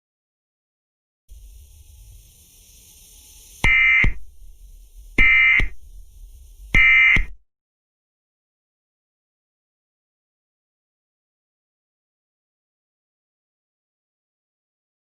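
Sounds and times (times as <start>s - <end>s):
faint static hiss: 1.3s - 7.3s
shrill buzzing data chirps: 1.3s - 7.4s.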